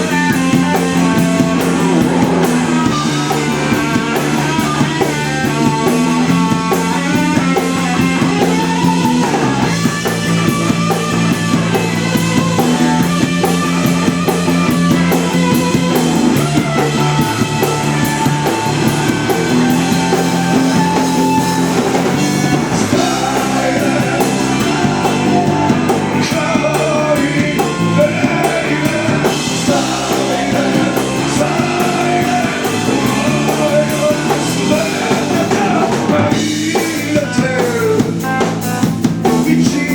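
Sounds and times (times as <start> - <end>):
rock band playing live: 0.0 - 39.9
person singing: 15.0 - 38.6, 39.3 - 39.9.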